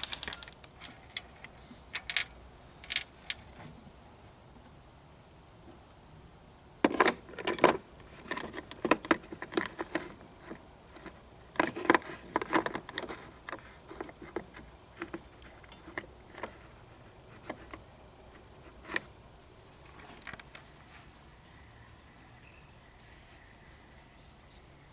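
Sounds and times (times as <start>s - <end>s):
small metal objects clinking: 0.0s - 0.6s.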